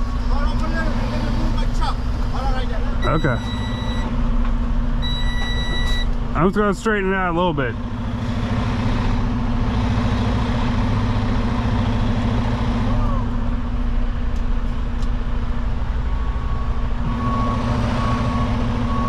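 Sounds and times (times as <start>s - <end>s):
diesel truck engine idling: 0.0s - 19.0s
backup alarm beeping: 3.0s - 4.1s, 5.0s - 6.1s, 16.4s - 19.0s.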